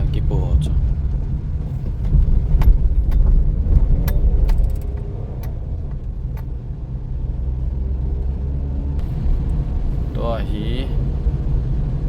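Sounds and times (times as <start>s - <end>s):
car interior rumble: 0.0s - 12.0s
knocks and rattles: 1.7s - 6.6s.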